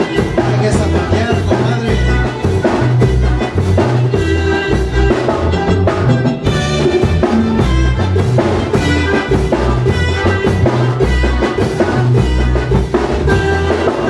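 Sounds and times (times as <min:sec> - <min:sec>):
band melody line: 0:00.0 - 0:14.0
drum kit and bass beat: 0:00.0 - 0:14.0.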